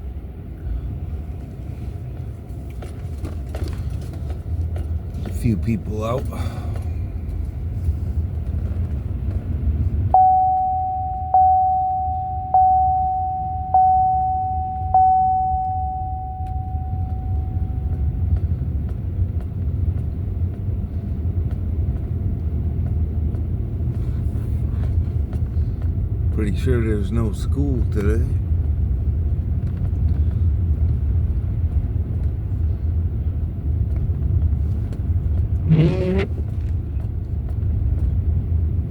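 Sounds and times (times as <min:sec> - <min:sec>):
car cabin road rumble: 0:00.0 - 0:38.9
chime dinging: 0:10.2 - 0:18.0.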